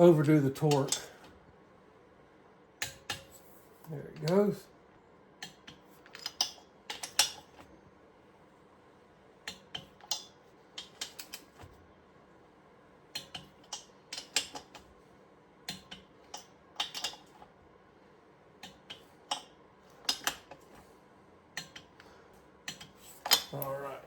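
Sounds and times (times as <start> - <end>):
metal tools clicking and clinking: 0.7 - 1.2, 22.7 - 23.8.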